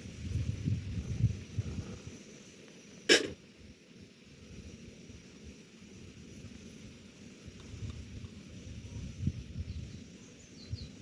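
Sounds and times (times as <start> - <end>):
wind buffeting microphone: 0.0 - 2.0, 7.5 - 11.0.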